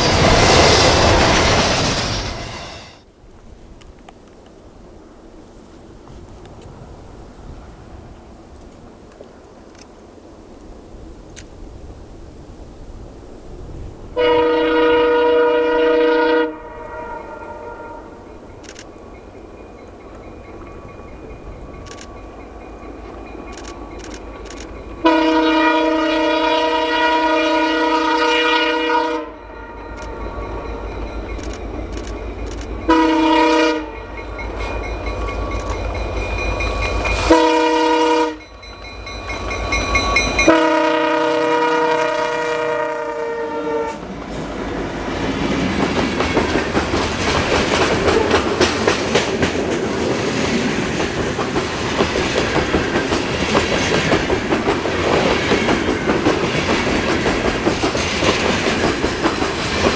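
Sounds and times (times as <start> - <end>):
train wheels clacking on rails: 0.0 - 3.1, 18.1 - 27.9, 29.5 - 42.6, 43.9 - 59.9
freight train rumbling: 0.0 - 59.9
locomotive air horn blasts: 14.2 - 18.3, 25.0 - 30.9, 32.9 - 34.8, 37.1 - 38.5, 40.2 - 44.1.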